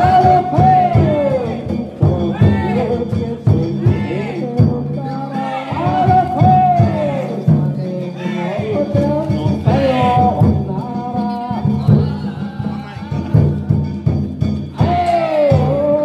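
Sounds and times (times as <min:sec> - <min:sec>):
sharp drum strikes: 0:00.0 - 0:05.1, 0:08.7 - 0:16.0
person singing: 0:00.0 - 0:13.8, 0:14.7 - 0:16.0
instrumental accompaniment: 0:00.0 - 0:16.0.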